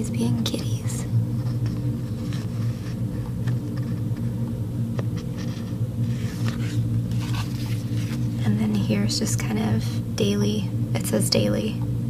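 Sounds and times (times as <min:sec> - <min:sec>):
low steady room hum: 0:00.0 - 0:12.0
sticker sheets rustling: 0:05.2 - 0:08.4.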